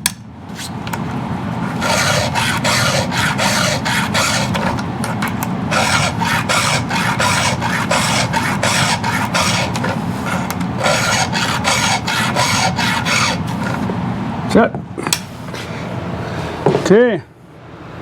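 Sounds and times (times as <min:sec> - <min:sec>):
steady low hum: 0:00.0 - 0:18.0
file rasping on chainsaw chain: 0:01.6 - 0:13.9.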